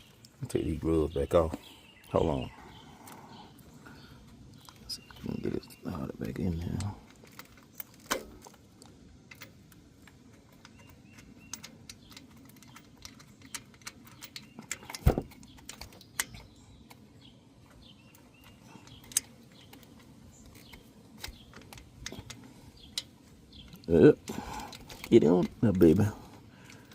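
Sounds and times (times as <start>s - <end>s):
metallic clicks and taps: 18.1s - 23.9s.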